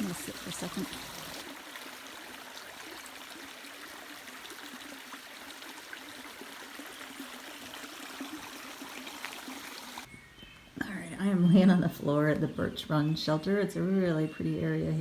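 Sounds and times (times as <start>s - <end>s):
stream babbling: 0.0s - 10.1s.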